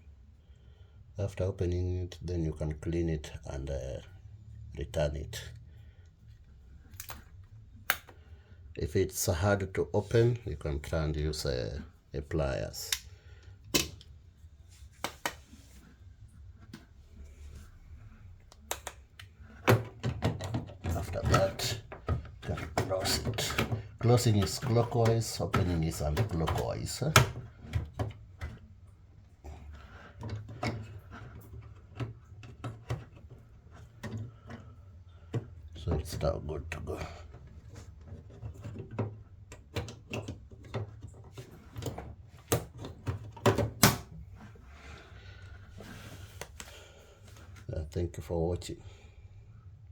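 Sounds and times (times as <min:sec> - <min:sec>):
low steady hum: 0:00.0 - 0:49.9
knocks and clicks of handling: 0:12.9 - 0:14.2, 0:14.9 - 0:15.9, 0:18.4 - 0:28.8, 0:29.6 - 0:44.6
plastic clicks and knocks: 0:13.7 - 0:14.1, 0:18.5 - 0:28.6.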